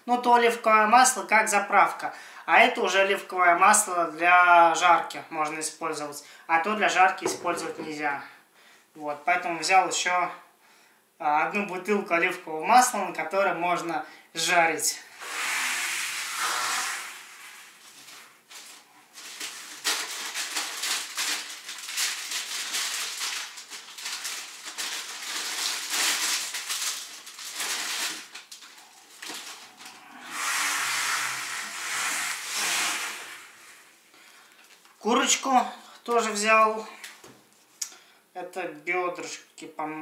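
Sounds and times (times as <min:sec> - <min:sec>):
plastic bags rustling: 0:15.3 - 0:35.0.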